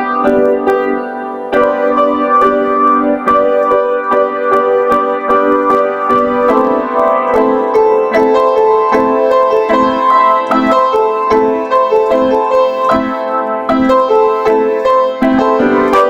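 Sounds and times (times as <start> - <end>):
piano-like keyboard music: 0.0 - 16.0.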